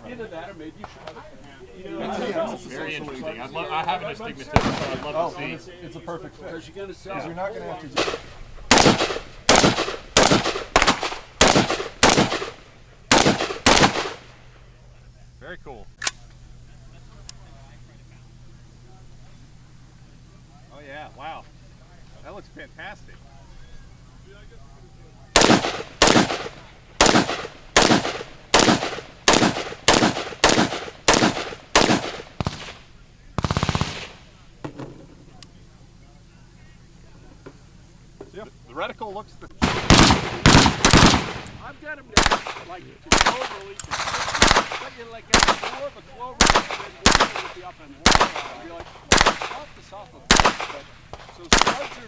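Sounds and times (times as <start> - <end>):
gunshots with echo: 4.6 - 5.2, 7.9 - 14.3, 25.4 - 34.2, 39.6 - 41.6, 42.2 - 49.7, 50.3 - 52.0
rapid burst of gunfire: 4.6 - 5.2, 7.9 - 14.4, 25.4 - 34.3, 39.6 - 52.0.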